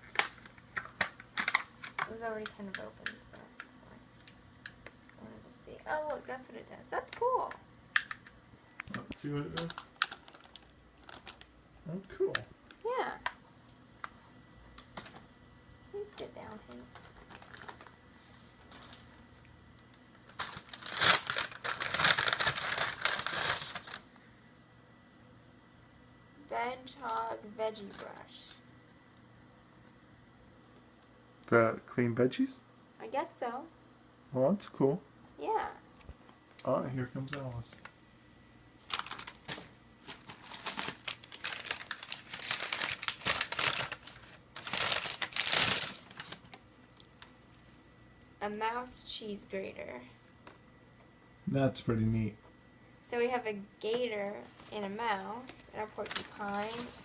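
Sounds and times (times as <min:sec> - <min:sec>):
packaging crinkling and rustling: 0:00.0 - 0:03.2, 0:08.0 - 0:11.5, 0:16.2 - 0:18.0, 0:18.6 - 0:19.2, 0:20.0 - 0:24.1, 0:27.8 - 0:28.6, 0:38.8 - 0:47.6, 0:54.5 - 0:57.0.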